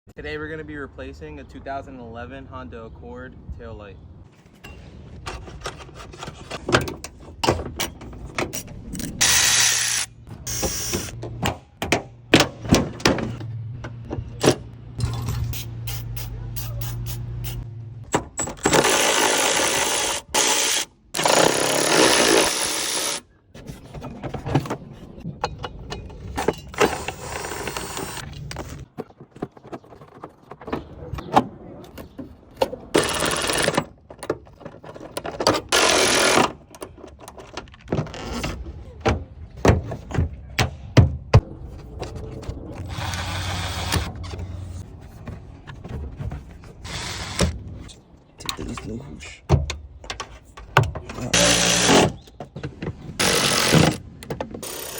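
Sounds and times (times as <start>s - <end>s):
power tool bursts: 9.2s - 11.1s, 18.6s - 23.2s, 35.7s - 36.5s, 51.3s - 52.2s, 53.2s - 54.0s.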